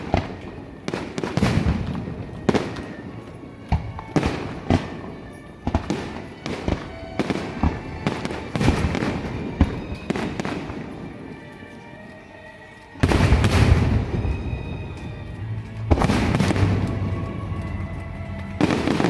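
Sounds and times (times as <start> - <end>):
fireworks bangs: 0.0 - 11.3, 13.0 - 19.0
music playing: 0.0 - 19.0.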